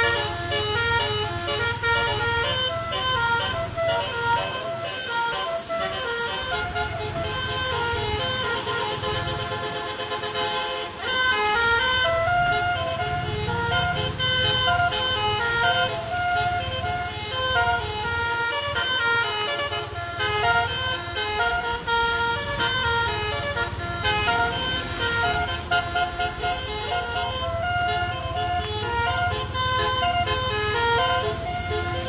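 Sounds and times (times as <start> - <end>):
bus engine rumble: 0.0 - 32.0
bus musical horn tune: 0.0 - 32.0.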